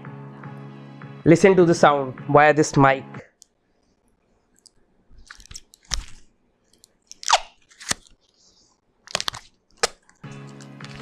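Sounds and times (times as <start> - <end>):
packaging crackling: 5.2 - 8.3, 9.0 - 11.0.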